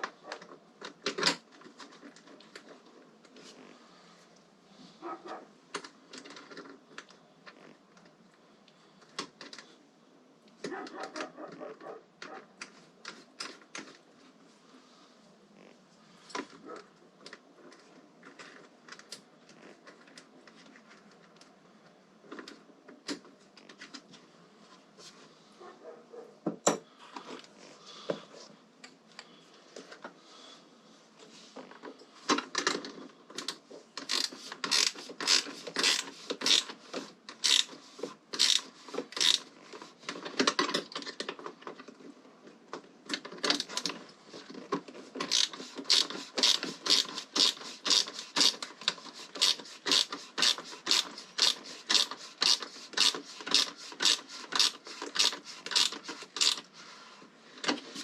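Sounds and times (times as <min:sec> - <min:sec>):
rapid sharp mechanical clicks: 0:33.4 - 0:39.5, 0:45.2 - 0:56.7.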